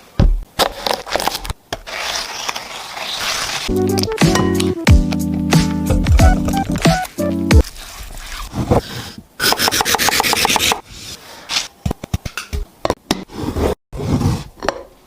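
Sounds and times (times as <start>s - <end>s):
rapid scraping strokes: 7.6s - 11.2s.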